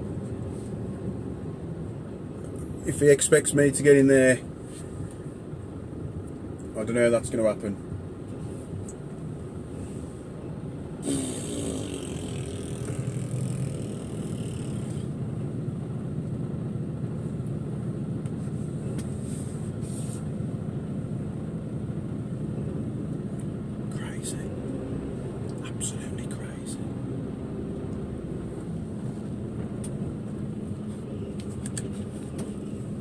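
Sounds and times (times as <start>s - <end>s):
diesel lorry engine running: 7.8s - 33.0s
air hiss: 11.0s - 14.9s.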